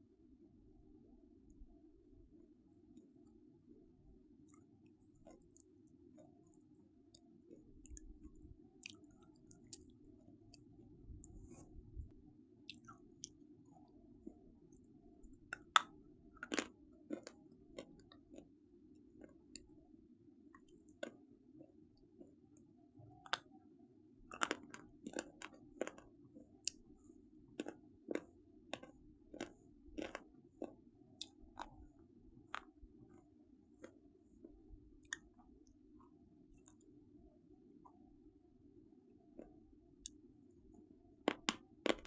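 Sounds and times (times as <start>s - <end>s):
steady low hum: 0.0s - 20.6s.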